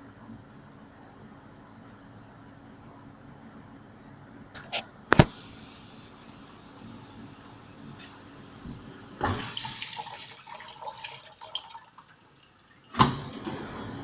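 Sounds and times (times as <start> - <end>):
dishwasher running hum: 4.6 - 14.0
dishwasher clunk: 9.2 - 9.7, 12.9 - 13.9
water splashing and dripping: 9.3 - 13.0.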